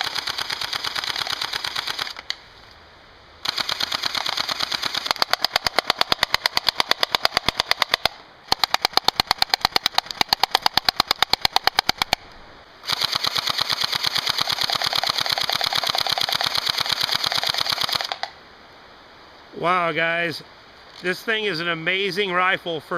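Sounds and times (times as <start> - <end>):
airsoft rifle automatic fire: 0.0 - 2.2, 3.4 - 12.2, 12.8 - 18.3.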